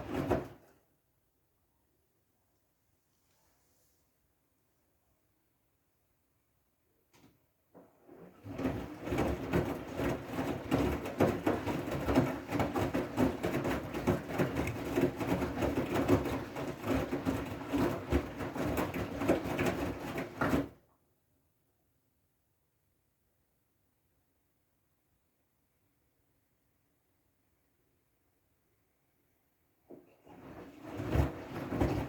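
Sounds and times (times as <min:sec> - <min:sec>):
washing machine drum churning: 0:00.0 - 0:00.7, 0:07.8 - 0:20.8, 0:30.0 - 0:32.0.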